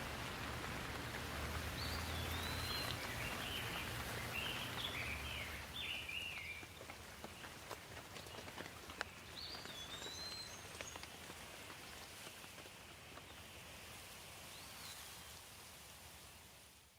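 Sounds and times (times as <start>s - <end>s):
raindrops tapping: 0.0s - 13.5s
light rain hissing: 0.0s - 16.9s.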